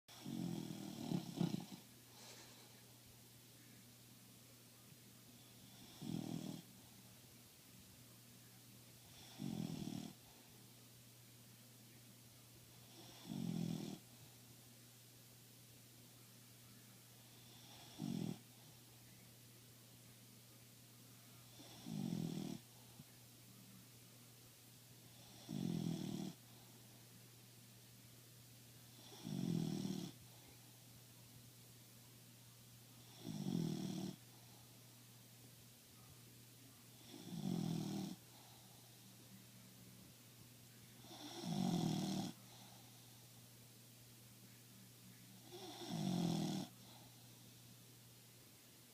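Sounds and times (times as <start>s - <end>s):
dog snoring: 0.1s - 2.4s, 5.4s - 6.8s, 9.0s - 10.4s, 12.8s - 14.2s, 17.3s - 18.7s, 21.4s - 22.7s, 25.1s - 26.6s, 28.9s - 30.4s, 33.0s - 34.5s, 36.9s - 38.9s, 41.0s - 43.1s, 45.4s - 47.3s
person snoring: 0.1s - 2.8s, 37.0s - 38.6s, 41.0s - 42.8s, 45.4s - 47.2s
steady low hum: 0.1s - 48.9s.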